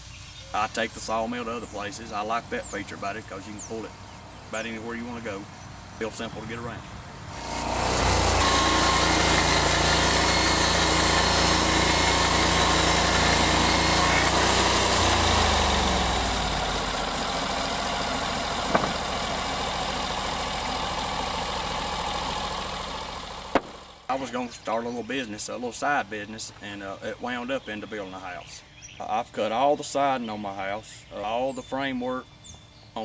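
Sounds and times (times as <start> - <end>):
band sawmill running: 7.3 - 27.5.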